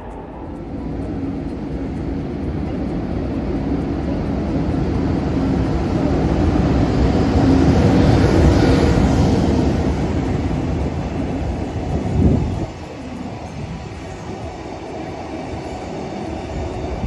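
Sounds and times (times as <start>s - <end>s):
train rumbling: 0.0s - 17.0s.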